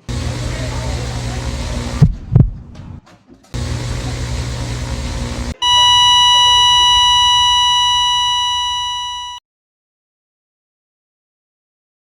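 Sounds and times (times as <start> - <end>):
low rumbling noise: 0.0 - 3.0
loud steady electronic beep: 4.5 - 9.4.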